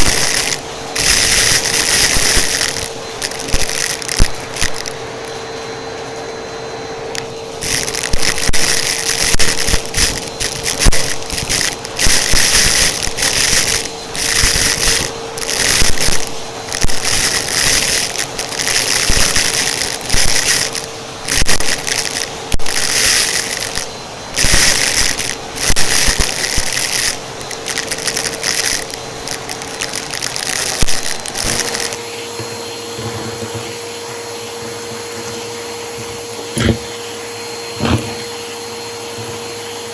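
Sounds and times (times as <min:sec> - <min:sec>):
vacuum cleaner motor hum: 0:00.0 - 0:39.9
brush scraping over surface: 0:32.4 - 0:39.6.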